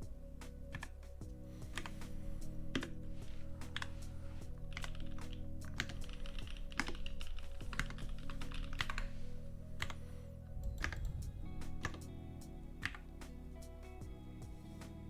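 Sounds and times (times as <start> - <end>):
background music: 0.0 - 15.0
mechanical keyboard typing: 4.7 - 9.1, 11.8 - 12.1.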